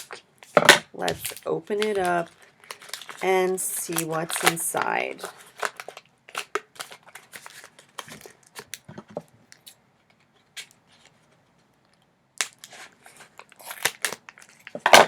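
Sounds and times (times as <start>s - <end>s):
packaging tearing: 0.0s - 8.9s, 12.4s - 15.0s
packaging rustling and crinkling: 0.0s - 15.0s.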